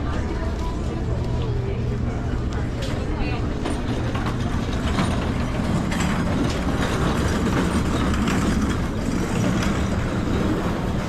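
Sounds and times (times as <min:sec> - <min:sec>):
train wheels rumbling on track: 0:00.0 - 0:11.0.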